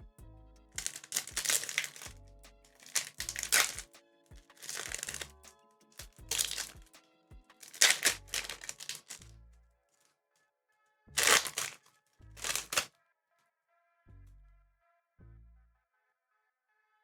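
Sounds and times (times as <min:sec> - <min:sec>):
soft background music: 0:00.0 - 0:12.9
cards and wrapper crinkling: 0:00.8 - 0:06.9, 0:07.5 - 0:09.3, 0:11.2 - 0:11.8, 0:12.4 - 0:12.9.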